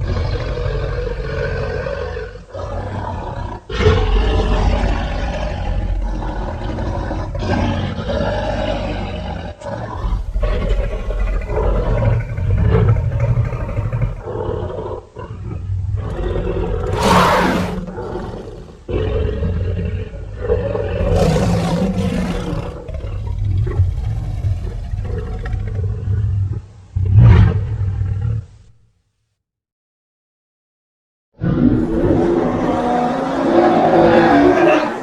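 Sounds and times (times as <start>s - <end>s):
deep growling creature roars: 0.0s - 24.0s, 31.4s - 35.0s
shrieking roars: 16.1s - 18.8s, 31.5s - 35.0s.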